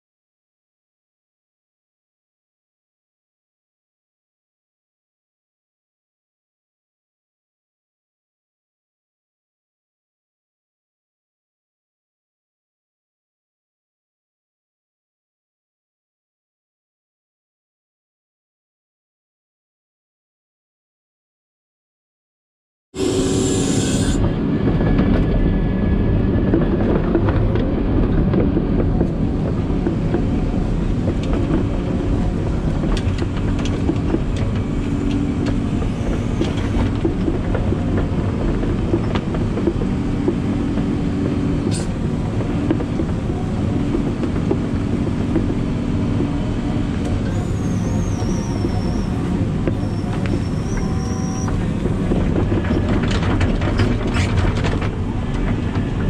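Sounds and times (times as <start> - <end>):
moving vehicle rumble: 23.0 - 56.0.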